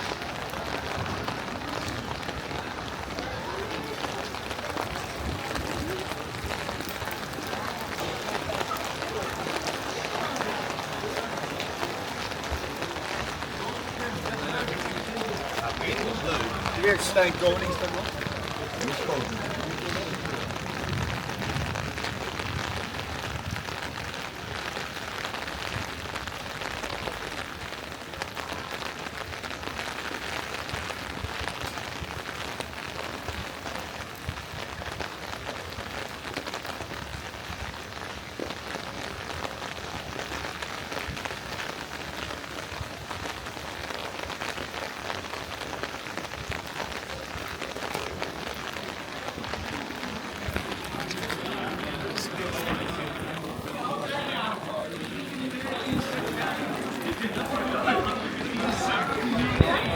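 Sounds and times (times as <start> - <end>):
rain pattering on street: 0.0 - 59.9.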